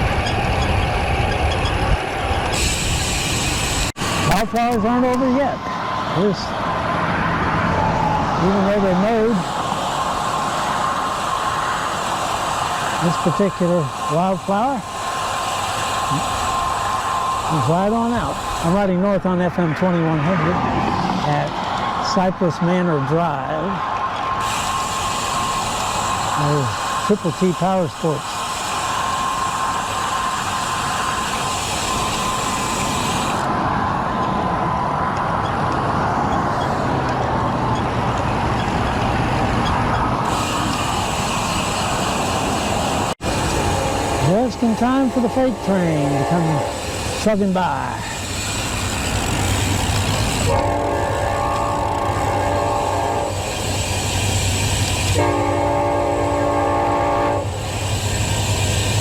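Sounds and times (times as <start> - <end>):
freight train rumbling: 0.0 - 59.0
wind and road noise: 0.0 - 59.0
train horn blasts: 44.0 - 47.1, 50.4 - 53.5, 55.1 - 57.6.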